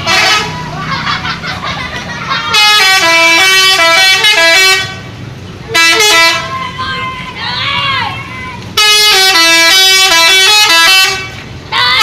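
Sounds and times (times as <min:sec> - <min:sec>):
multi-tone bus horn: 0:00.0 - 0:01.1, 0:02.4 - 0:06.8, 0:08.8 - 0:12.0.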